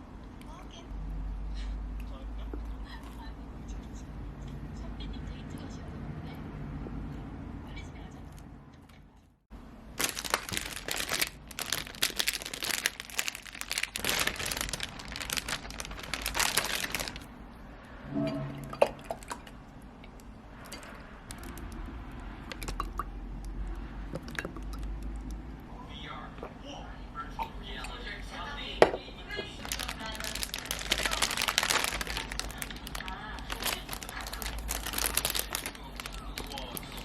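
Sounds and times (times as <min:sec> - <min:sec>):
packaging crinkling and rustling: 0:09.9 - 0:17.3, 0:29.4 - 0:37.0.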